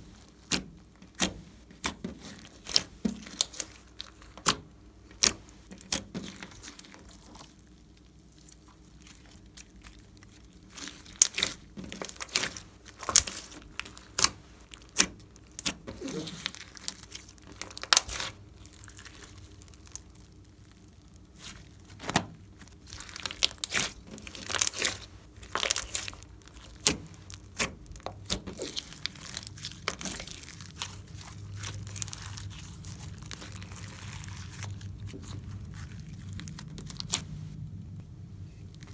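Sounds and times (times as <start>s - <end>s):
slime popping and crackling: 8.6s - 37.6s.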